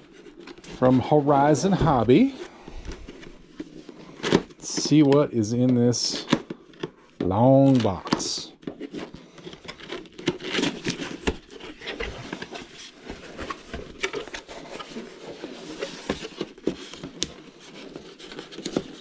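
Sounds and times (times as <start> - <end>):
cardboard box scraping and rustling: 9.7 - 19.0.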